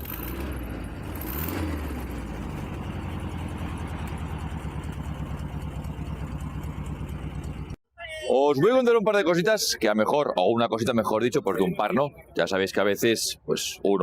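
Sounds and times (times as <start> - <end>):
car engine idling: 0.0 - 7.8.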